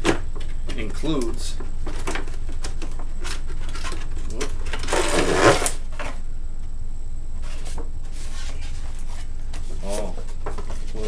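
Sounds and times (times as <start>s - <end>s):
steady low hum: 0.0s - 11.0s
rustling and clattering: 1.6s - 6.2s.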